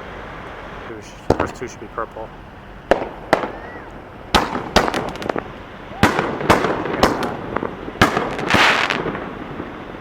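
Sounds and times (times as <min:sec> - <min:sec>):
firework hissing crackle: 0:00.0 - 0:10.0
firework shells banging: 0:01.2 - 0:02.2, 0:02.9 - 0:09.8.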